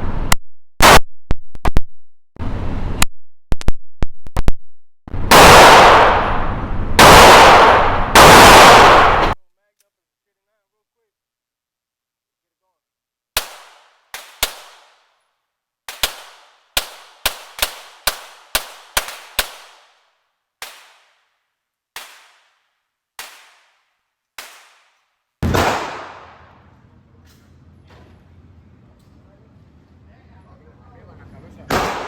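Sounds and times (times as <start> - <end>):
loud boom: 5.1 - 9.4
pistol shots echoing: 7.0 - 9.4, 24.4 - 26.6, 31.7 - 32.0.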